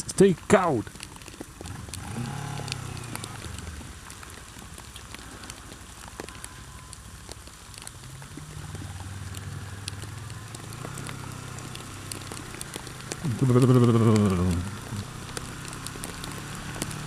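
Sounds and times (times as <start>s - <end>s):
heavy rain patter: 0.0s - 17.0s
motorcycle engine running: 1.6s - 4.4s.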